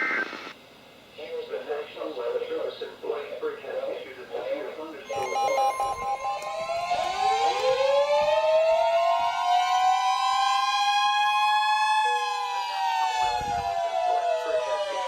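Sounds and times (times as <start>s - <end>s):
lower steady tone: 5.1s - 9.3s
siren-like electronic tone: 5.1s - 15.0s
steady alarm tone: 5.1s - 15.0s.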